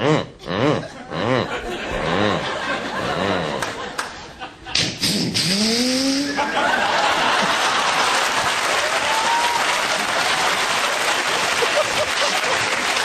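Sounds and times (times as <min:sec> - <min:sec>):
studio audience applauding: 0:06.8 - 0:13.0.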